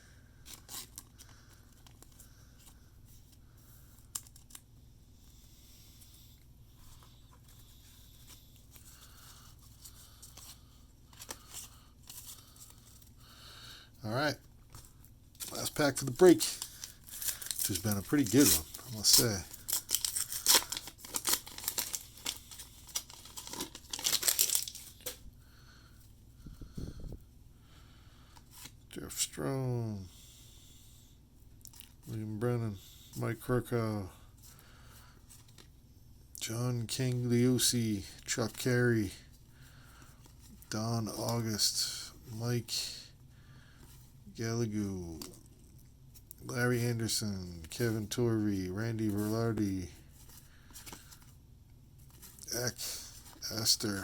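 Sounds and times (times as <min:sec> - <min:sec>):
rustling of cards and wrapper: 0:00.4 - 0:25.3, 0:43.8 - 0:51.4, 0:52.0 - 0:54.0
foil wrapper tearing and crinkling: 0:15.4 - 0:25.1.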